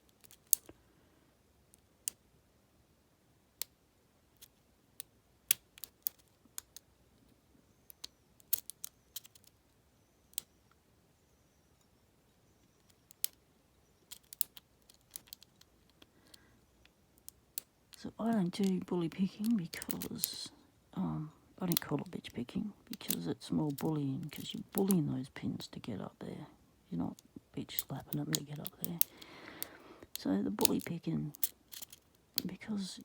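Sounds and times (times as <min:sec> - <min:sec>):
lock pick metal clicks: 0:07.9 - 0:09.5, 0:14.1 - 0:17.7, 0:27.8 - 0:32.5.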